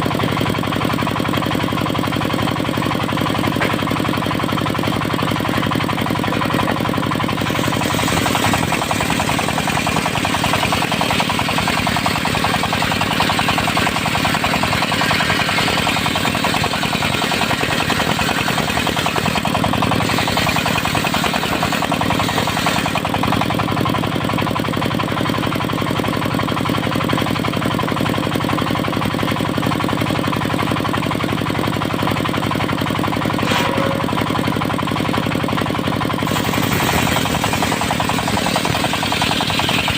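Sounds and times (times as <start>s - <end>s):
diesel engine knocking: 0.0s - 39.9s
harsh bright saw noise: 7.4s - 11.8s, 12.7s - 23.0s, 33.4s - 34.3s, 36.2s - 39.9s.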